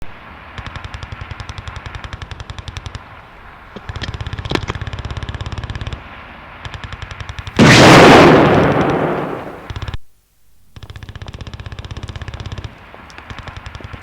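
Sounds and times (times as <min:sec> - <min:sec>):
sharp crack: 0:00.0 - 0:10.0, 0:10.8 - 0:14.0
automatic gunfire bursts: 0:06.7 - 0:10.0, 0:10.8 - 0:14.0.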